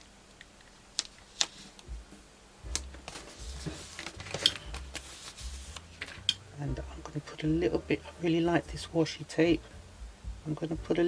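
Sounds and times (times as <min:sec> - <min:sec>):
paper rustling: 0:01.0 - 0:01.9, 0:02.7 - 0:06.3
light taps and low thuds: 0:01.8 - 0:07.7, 0:09.5 - 0:11.0.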